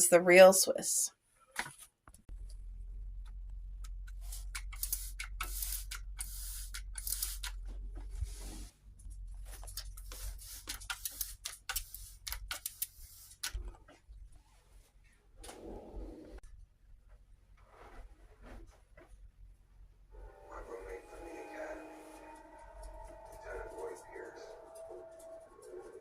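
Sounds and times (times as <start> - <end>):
low steady hum: 2.3 - 5.4, 13.6 - 26.0.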